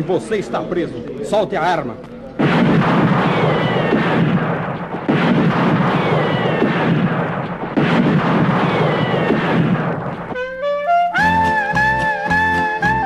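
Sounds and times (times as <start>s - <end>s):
heavy gunshots with rumbling echo: 2.4s - 10.4s.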